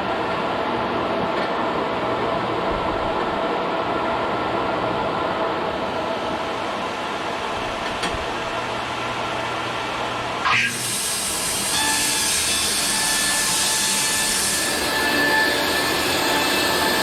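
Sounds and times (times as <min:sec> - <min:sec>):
bandsaw sawmill cutting log: 0:10.4 - 0:17.0.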